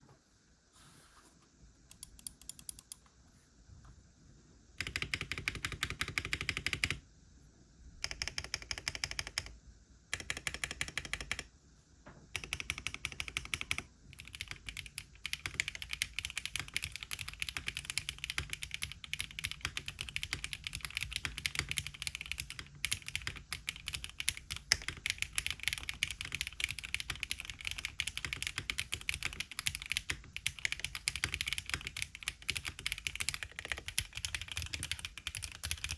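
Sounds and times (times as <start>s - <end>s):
typing on mechanical keyboard: 4.8s - 7.0s, 8.0s - 11.5s, 12.4s - 35.9s.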